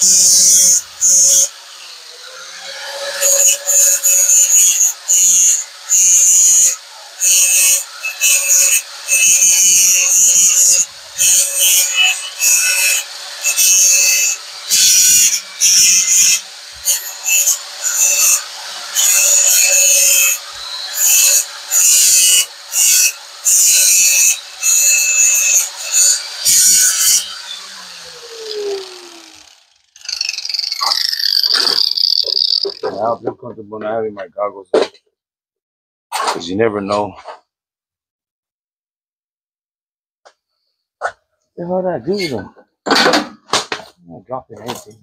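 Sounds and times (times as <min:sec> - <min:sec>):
grinder motor whine: 0:00.0 - 0:32.9
grinder grinding metal: 0:00.0 - 0:33.5
motor spinning down: 0:26.2 - 0:32.8.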